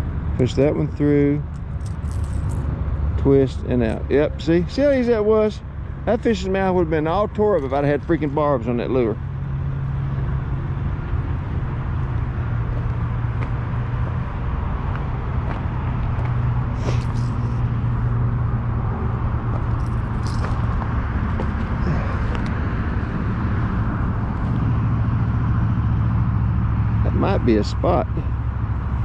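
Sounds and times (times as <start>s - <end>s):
low motor drone: 0.0s - 29.0s
rustles: 16.7s - 17.6s.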